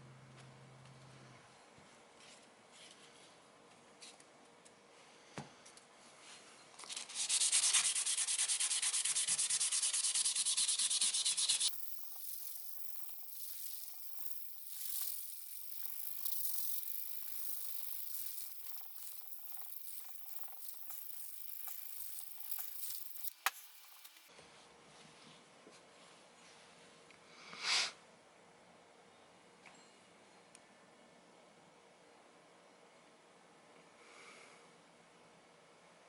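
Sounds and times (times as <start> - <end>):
sanding rasp: 6.9 - 24.0.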